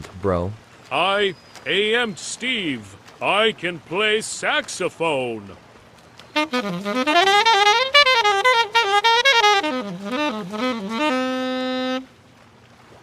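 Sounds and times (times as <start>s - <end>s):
solo saxophone: 6.3s - 12.2s.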